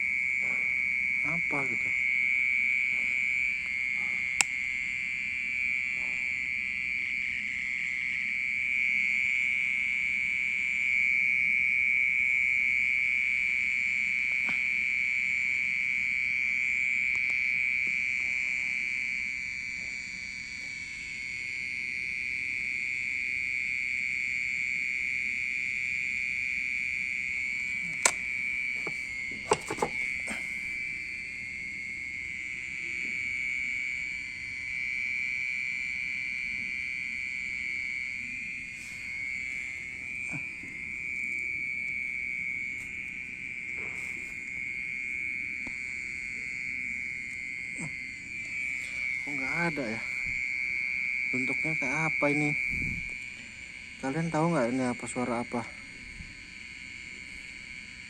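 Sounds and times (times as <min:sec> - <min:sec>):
insect trilling: 0:00.0 - 0:06.4, 0:08.9 - 0:58.0.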